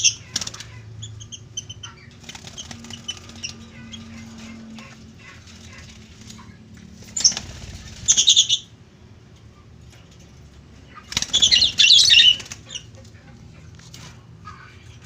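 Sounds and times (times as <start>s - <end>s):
lovebirds chattering calls: 0.0s - 8.7s, 10.9s - 13.6s.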